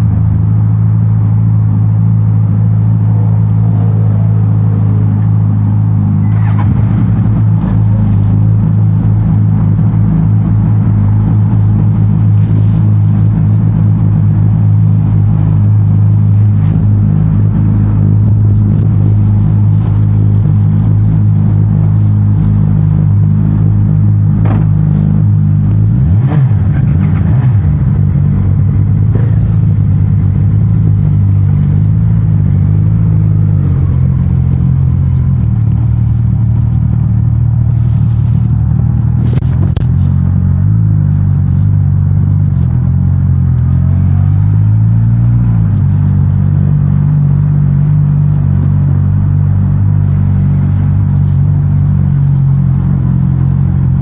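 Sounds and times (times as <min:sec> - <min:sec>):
motorcycle engine revving: 0:00.0 - 0:54.0
motorcycle engine running: 0:00.0 - 0:54.0.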